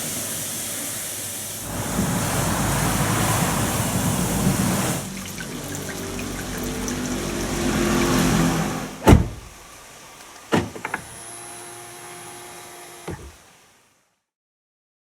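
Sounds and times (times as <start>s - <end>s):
car engine running: 1.6s - 9.7s
car door shutting: 7.6s - 9.7s, 10.5s - 11.2s, 13.1s - 13.4s.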